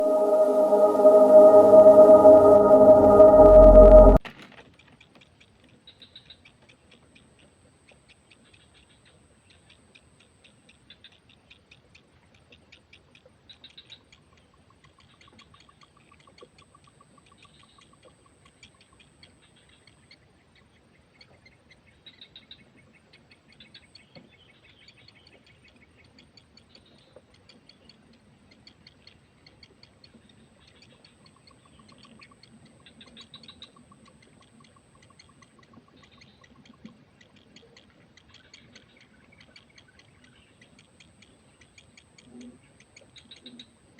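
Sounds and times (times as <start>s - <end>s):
pulsed trill: 0.0s - 4.2s.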